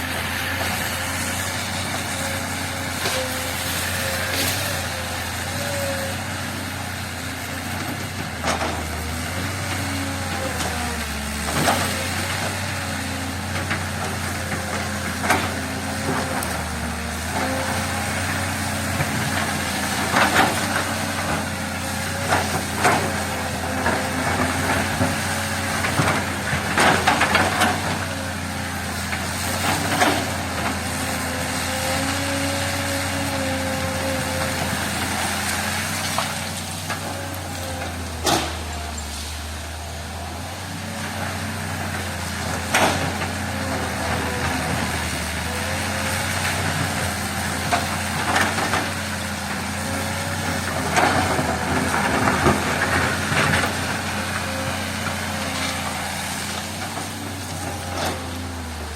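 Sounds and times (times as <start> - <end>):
diesel engine running: 0.0 - 58.9.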